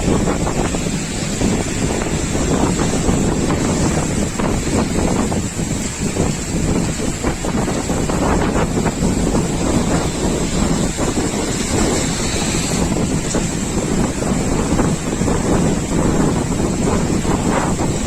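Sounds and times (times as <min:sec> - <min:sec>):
heavy surf: 0:00.0 - 0:18.0
wind buffeting microphone: 0:00.0 - 0:18.0.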